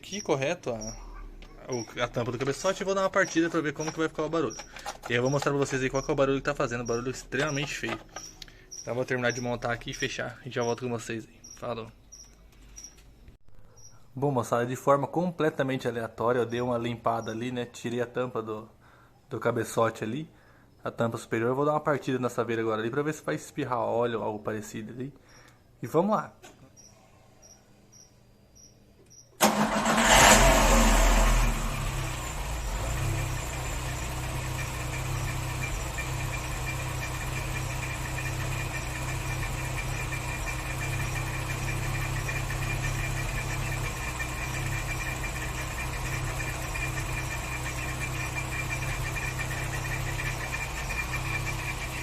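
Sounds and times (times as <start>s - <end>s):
car engine revving and idling: 0.8s - 10.1s, 29.5s - 52.0s
loud abnormal engine noise: 0.8s - 10.2s, 29.6s - 52.0s.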